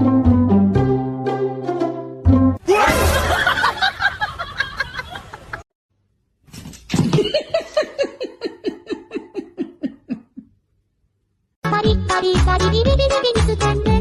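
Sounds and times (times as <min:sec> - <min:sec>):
person laughing: 0:07.1 - 0:10.5.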